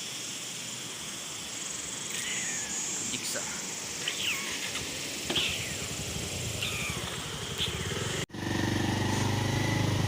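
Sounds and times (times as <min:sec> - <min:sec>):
high-pitched insect drone: 0:00.0 - 0:08.2
falling chirping animal calls: 0:02.0 - 0:03.1, 0:04.0 - 0:08.1
motorcycle engine running: 0:06.1 - 0:10.0.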